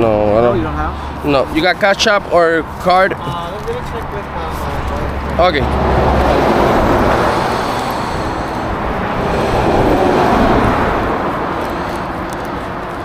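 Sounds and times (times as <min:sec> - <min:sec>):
passing vehicle: 0:00.0 - 0:13.0.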